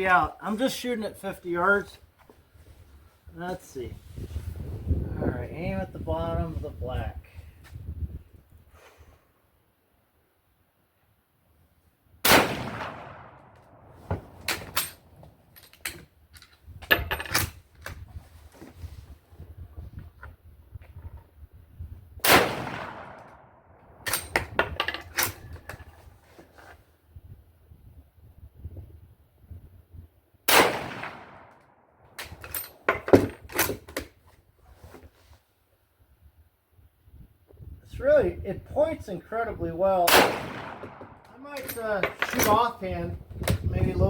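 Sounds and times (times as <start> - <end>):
rifle shot with echo: 12.2 - 14.4, 22.2 - 23.5, 30.5 - 31.6, 40.1 - 41.2.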